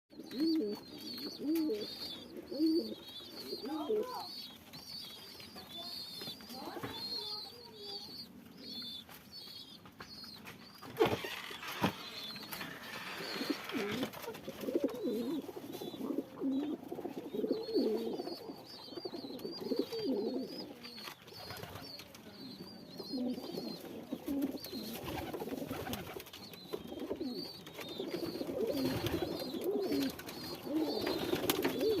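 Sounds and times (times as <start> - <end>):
pigeon cooing: 0.2 - 4.6, 11.0 - 32.0
pigeon squabs squeaking: 0.2 - 9.8, 10.6 - 32.0.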